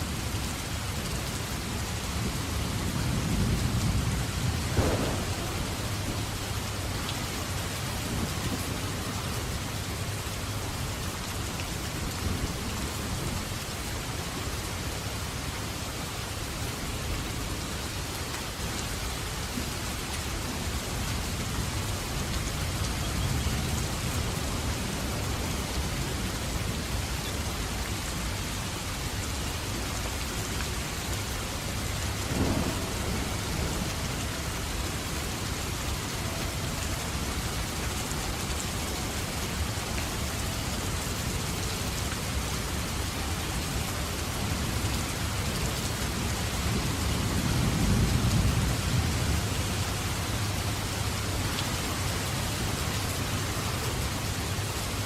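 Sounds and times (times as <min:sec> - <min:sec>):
heavy rain: 0:00.0 - 0:55.0
thunder rumbling: 0:02.2 - 0:09.6, 0:32.2 - 0:37.6
short loud thump: 0:04.8 - 0:05.7.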